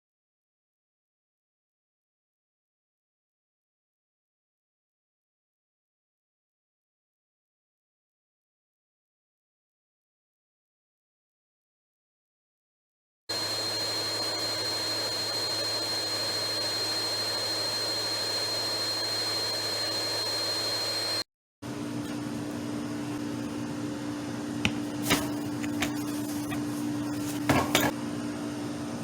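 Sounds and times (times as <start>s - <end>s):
vacuum cleaner motor whining: 13.3s - 21.2s.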